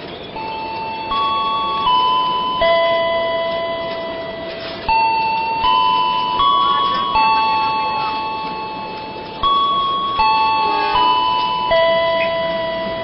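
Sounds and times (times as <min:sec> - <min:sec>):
musical horn playing a tune: 0:10.5 - 0:11.4.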